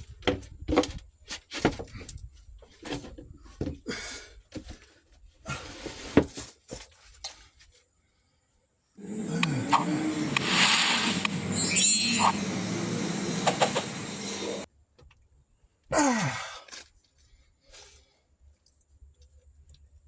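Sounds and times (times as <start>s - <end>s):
short hissing bursts: 9.0s - 14.7s.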